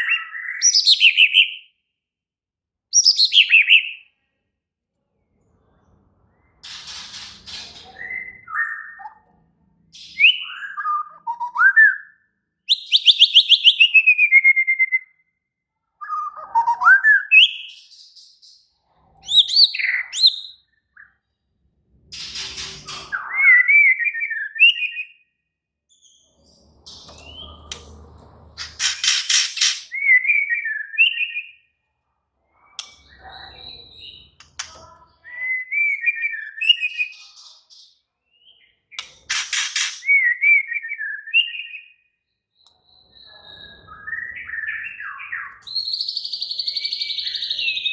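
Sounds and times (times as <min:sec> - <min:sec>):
bird singing whistled phrases: 0:00.0 - 0:01.7, 0:02.9 - 0:04.1, 0:10.1 - 0:15.3, 0:16.0 - 0:17.9, 0:23.1 - 0:25.3, 0:29.8 - 0:31.6, 0:35.2 - 0:37.4, 0:40.0 - 0:42.1, 0:42.8 - 0:47.9
harsh rapid bird rattles: 0:28.6 - 0:29.9, 0:39.2 - 0:40.1.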